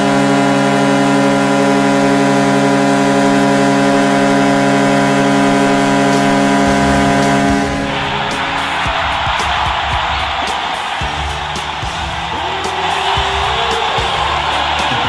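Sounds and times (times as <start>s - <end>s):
arena goal horn blast: 0.0s - 15.0s
low rhythmic beat: 0.0s - 15.0s.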